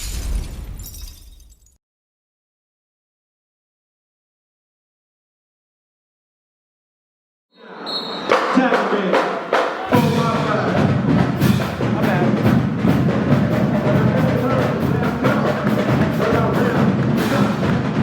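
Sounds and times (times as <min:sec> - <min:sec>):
dance music with heavy percussion: 0:08.3 - 0:18.0.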